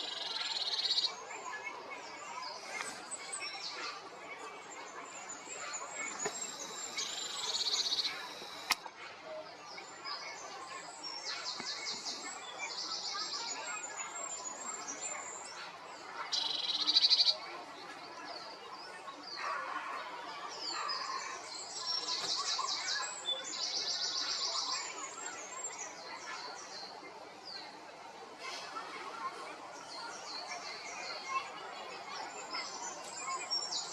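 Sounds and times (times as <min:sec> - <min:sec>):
small birds singing: 0:00.0 - 0:08.8, 0:09.6 - 0:19.4, 0:20.0 - 0:27.8, 0:29.3 - 0:33.9
sharp click: 0:07.8 - 0:08.9.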